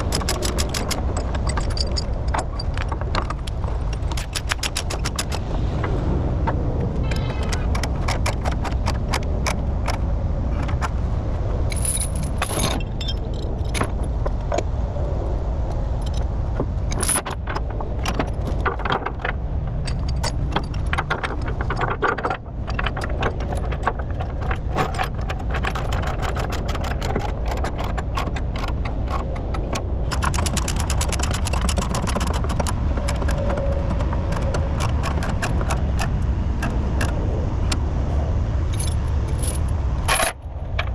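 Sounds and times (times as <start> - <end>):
steel chains rattling: 0.0 - 5.3, 11.7 - 14.0, 38.7 - 40.4.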